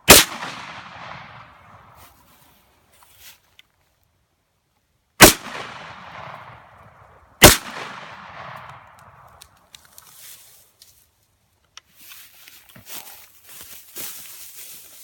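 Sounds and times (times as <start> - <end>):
gunshots: 0.1 - 1.8, 5.2 - 6.7, 7.4 - 9.2.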